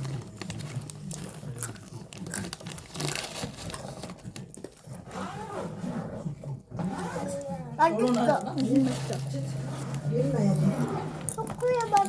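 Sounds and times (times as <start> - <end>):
plastic wrappers crinkling: 0.0 - 5.0, 7.8 - 10.6, 11.2 - 12.0.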